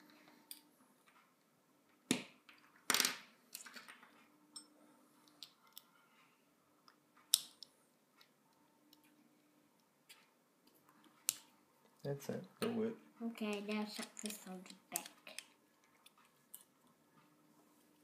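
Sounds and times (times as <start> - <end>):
plastic bricks clicking together: 13.5 - 16.7.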